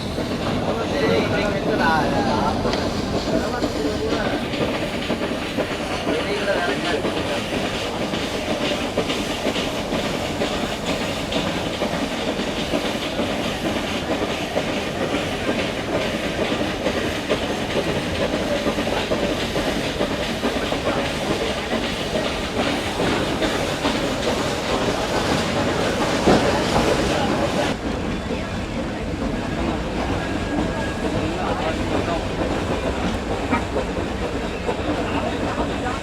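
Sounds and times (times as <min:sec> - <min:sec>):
hissing rush: 0:00.0 - 0:27.8
train wheels clattering on rails: 0:00.0 - 0:36.0.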